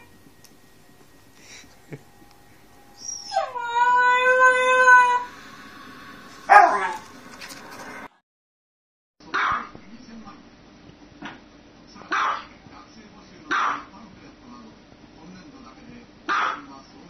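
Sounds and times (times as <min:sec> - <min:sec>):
dog howling: 0:02.6 - 0:08.0.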